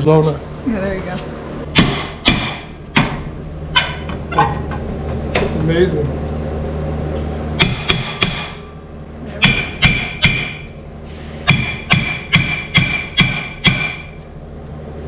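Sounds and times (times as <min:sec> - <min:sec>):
hammer ringing on metal: 0:07.6 - 0:08.6, 0:09.4 - 0:10.7, 0:11.5 - 0:14.2.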